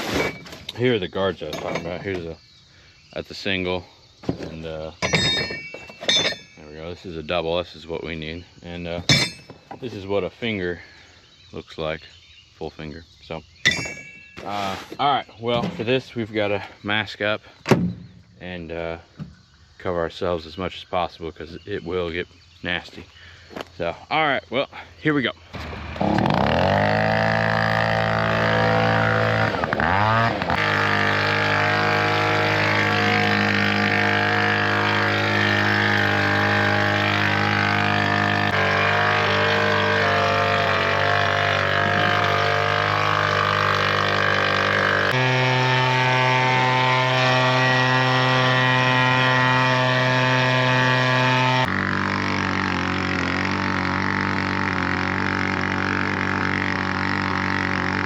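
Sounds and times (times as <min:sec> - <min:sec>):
leaf blower running: 0:25.5 - 0:58.0.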